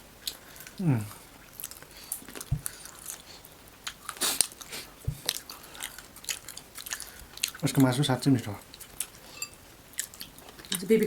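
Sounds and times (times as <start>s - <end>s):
crunching and chewing: 0.2s - 10.9s.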